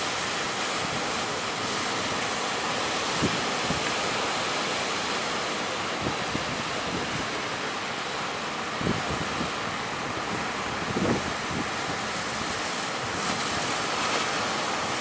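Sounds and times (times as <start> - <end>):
sea surf roaring: 0.0 - 15.0
wind buffeting microphone: 8.7 - 14.0.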